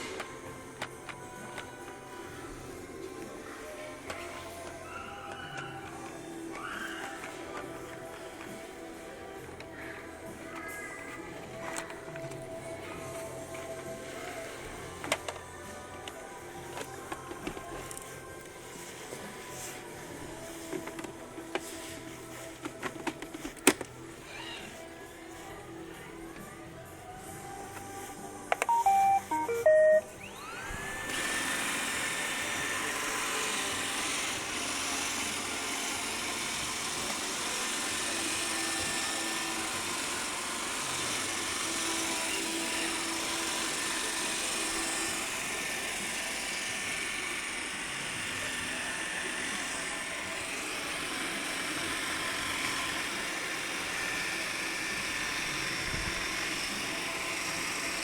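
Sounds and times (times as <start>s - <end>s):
vacuum motor whirring: 28.5s - 58.0s
beeping start-up tune: 28.6s - 30.5s.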